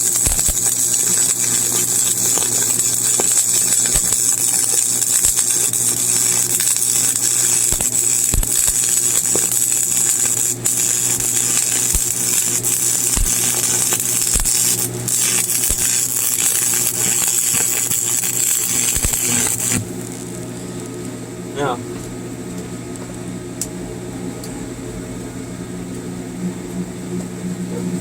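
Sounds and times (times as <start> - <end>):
welding arc crackling hiss: 0.0 - 21.7.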